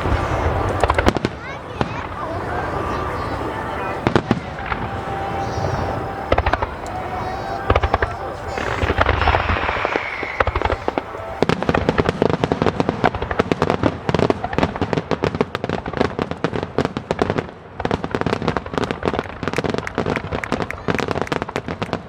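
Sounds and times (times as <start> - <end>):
falling firework whistle: 0.0 - 15.0
fireworks bursting and crackling: 0.0 - 22.0.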